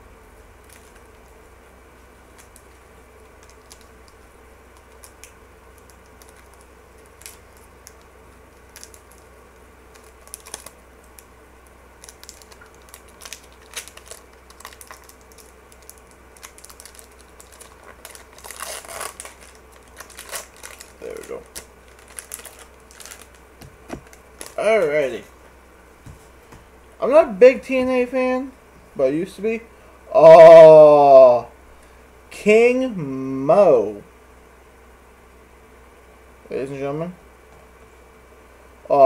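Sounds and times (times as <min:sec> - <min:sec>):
faint steady hum: 0:00.0 - 0:39.0
wrapper tearing and crinkling: 0:00.6 - 0:01.1, 0:02.3 - 0:09.3, 0:09.9 - 0:11.3, 0:12.0 - 0:25.2.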